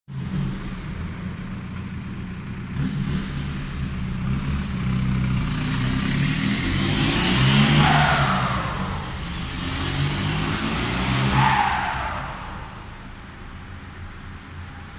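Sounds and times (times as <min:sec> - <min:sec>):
diesel engine running: 0:00.1 - 0:06.8.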